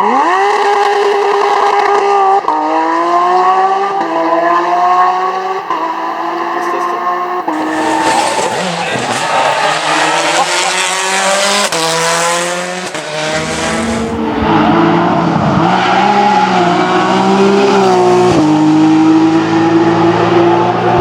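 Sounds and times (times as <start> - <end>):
rally car engine accelerating: 0.0 - 21.0.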